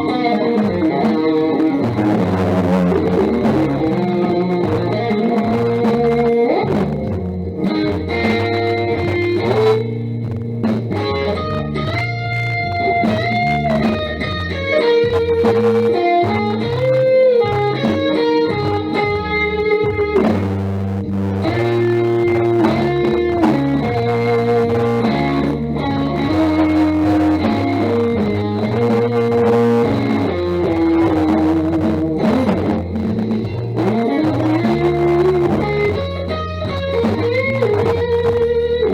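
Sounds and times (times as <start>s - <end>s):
bass line: 0.0s - 38.9s
guitar melody with bent notes: 0.0s - 38.9s.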